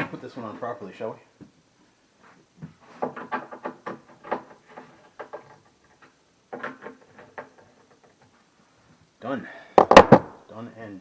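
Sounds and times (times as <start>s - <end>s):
cabinet parts clicking and knocking: 2.6s - 8.3s.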